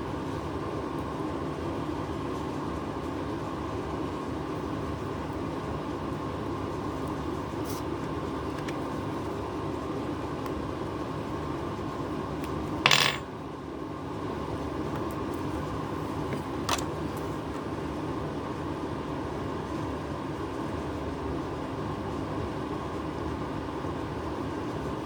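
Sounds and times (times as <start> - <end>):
mechanical hum: 0.0 - 25.0.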